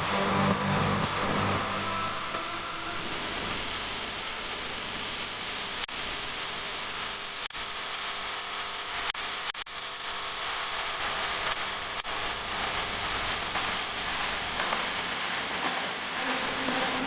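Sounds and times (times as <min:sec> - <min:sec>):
factory machine hiss: 0:11.4 - 0:17.0.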